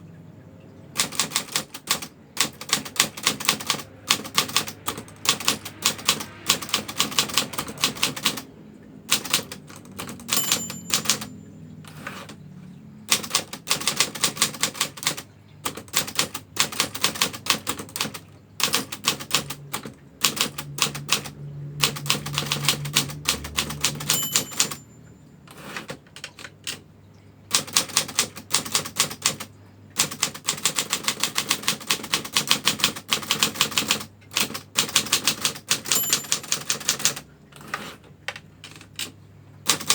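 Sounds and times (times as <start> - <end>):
typewriter bell ring: 1.0 - 8.5, 9.1 - 12.4, 21.9 - 25.8, 32.3 - 37.3
typewriter key strikes: 1.0 - 8.5, 9.1 - 12.4, 13.1 - 24.8, 27.5 - 39.9.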